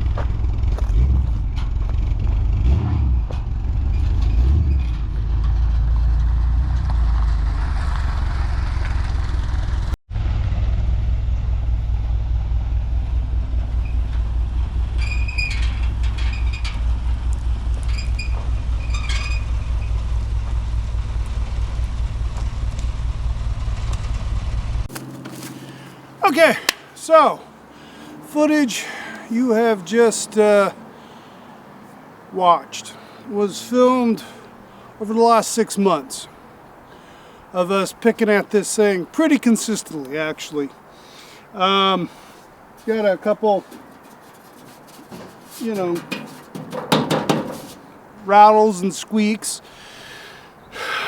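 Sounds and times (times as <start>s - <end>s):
truck engine running: 0.0s - 26.3s.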